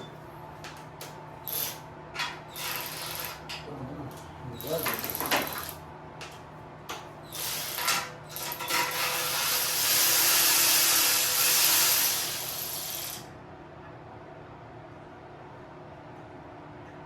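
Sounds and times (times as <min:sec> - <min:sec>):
power tool whirring: 0:02.5 - 0:03.4, 0:04.6 - 0:05.8, 0:07.3 - 0:13.3.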